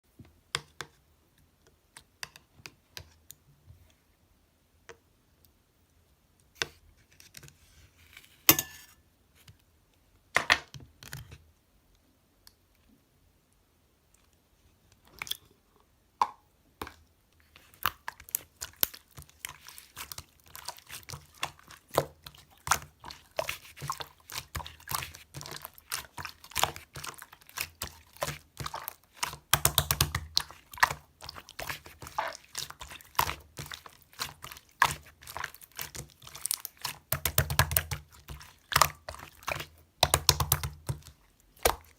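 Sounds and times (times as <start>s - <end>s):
slime squishing and clicking: 17.7s - 41.9s.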